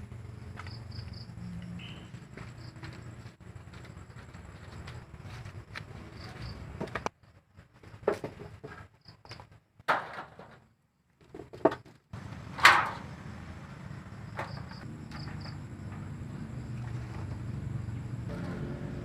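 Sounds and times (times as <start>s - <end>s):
knocks and clatters: 7.8s - 13.1s, 14.2s - 16.2s.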